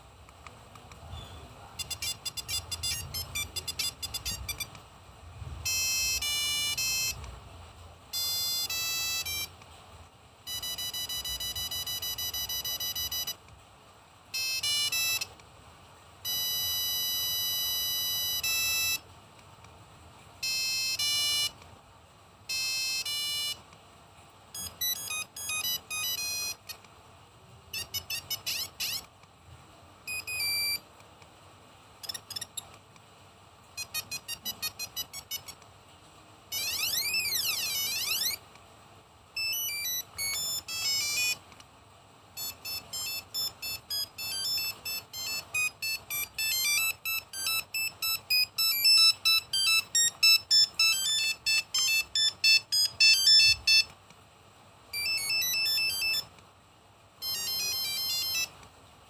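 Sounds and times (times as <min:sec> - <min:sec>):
electronic beeps: 0:01.1 - 0:04.8, 0:05.6 - 0:07.2, 0:08.2 - 0:09.6, 0:10.5 - 0:13.4, 0:14.4 - 0:15.3, 0:20.4 - 0:21.6, 0:22.5 - 0:23.6, 0:24.6 - 0:26.8, 0:27.7 - 0:29.0, 0:30.1 - 0:30.8, 0:32.0 - 0:32.7, 0:33.8 - 0:35.6, 0:36.5 - 0:38.4, 0:39.4 - 0:41.4, 0:42.4 - 0:53.9, 0:55.0 - 0:56.3, 0:57.2 - 0:58.6
fast beeping melody: 0:01.8 - 0:04.8, 0:05.6 - 0:07.2, 0:08.1 - 0:09.6, 0:10.5 - 0:13.4, 0:14.4 - 0:15.3, 0:16.2 - 0:19.0, 0:20.4 - 0:21.5, 0:22.5 - 0:23.6, 0:24.6 - 0:26.8, 0:27.7 - 0:29.0, 0:30.1 - 0:30.8, 0:33.8 - 0:35.6, 0:36.5 - 0:38.4, 0:39.4 - 0:41.4, 0:42.4 - 0:53.9, 0:55.0 - 0:56.3, 0:57.2 - 0:58.5
mobile phone ringtones: 0:01.8 - 0:04.8, 0:05.6 - 0:07.3, 0:08.1 - 0:09.6, 0:10.5 - 0:13.4, 0:14.3 - 0:15.3, 0:16.2 - 0:19.0, 0:20.4 - 0:21.6, 0:22.5 - 0:23.6, 0:24.6 - 0:26.8, 0:27.7 - 0:29.1, 0:30.1 - 0:30.8, 0:32.0 - 0:32.7, 0:33.8 - 0:35.6, 0:36.5 - 0:38.4, 0:39.4 - 0:41.4, 0:42.4 - 0:53.9, 0:54.9 - 0:56.3, 0:57.2 - 0:58.6.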